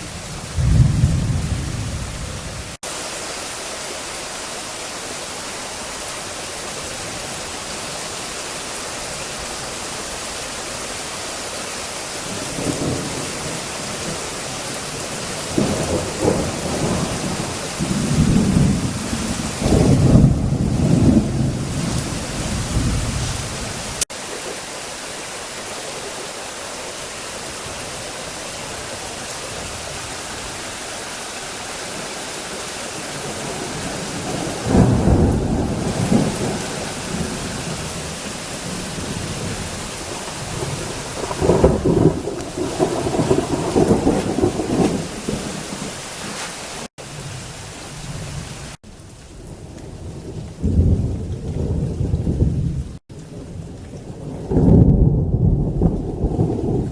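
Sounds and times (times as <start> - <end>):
thunder rolling: 0.0 - 2.8, 15.0 - 24.0, 33.1 - 46.4, 49.4 - 56.9
heavy rain falling: 0.0 - 56.9.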